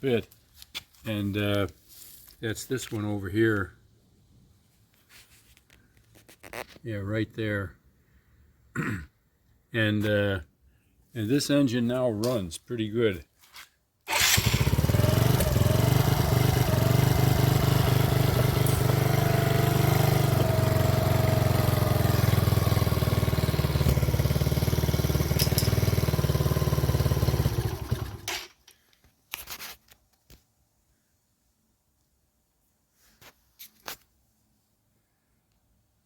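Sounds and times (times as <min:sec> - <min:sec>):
small engine idling: 0:14.1 - 0:28.6.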